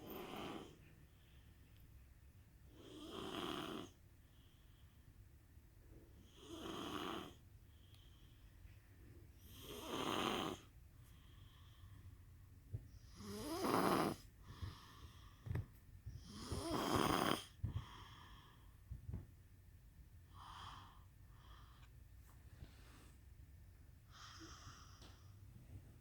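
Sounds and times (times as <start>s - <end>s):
child snoring: 0.0s - 0.7s, 2.8s - 4.0s, 6.3s - 7.4s, 9.5s - 10.7s, 13.2s - 14.2s, 16.2s - 17.6s.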